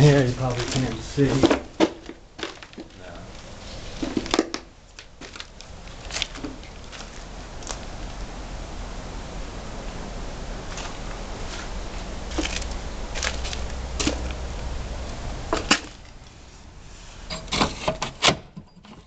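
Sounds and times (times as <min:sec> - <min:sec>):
rustling handling noise: 0:00.0 - 0:08.2, 0:10.7 - 0:14.6.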